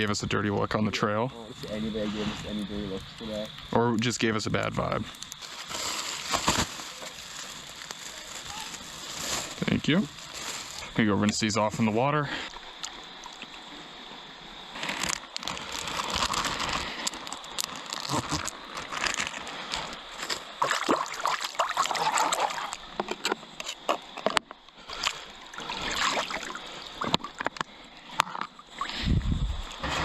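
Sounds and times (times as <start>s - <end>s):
hands splashing in river water: 20.6s - 22.9s, 24.9s - 27.7s
river flowing: 24.9s - 28.9s.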